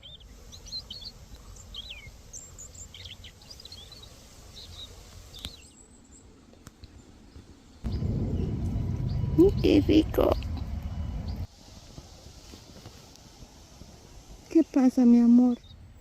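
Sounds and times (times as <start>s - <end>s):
songbird chirping: 0.0s - 11.5s, 14.5s - 16.0s
low background rumble: 7.8s - 11.5s.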